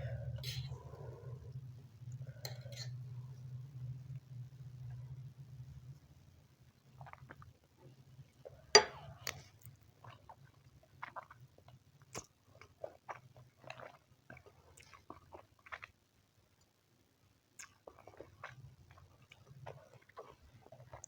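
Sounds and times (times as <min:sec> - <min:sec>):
wet chewing and mouth smacks: 0:17.6 - 0:21.0.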